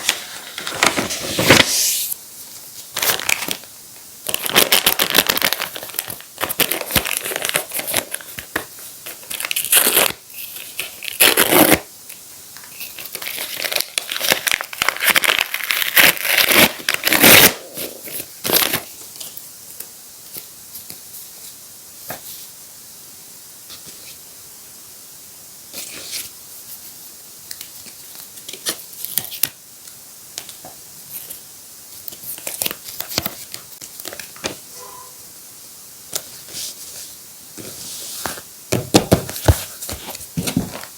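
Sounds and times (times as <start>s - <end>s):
paper crinkling and tearing: 0.0s - 2.2s, 2.9s - 3.7s, 4.3s - 8.4s, 9.0s - 11.8s, 12.7s - 18.9s
light paper rustles and taps: 36.1s - 40.9s.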